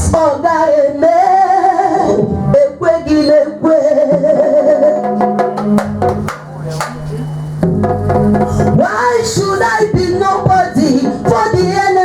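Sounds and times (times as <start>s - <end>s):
sharp percussion hits: 5.1s - 8.8s
held bass notes: 5.2s - 9.0s.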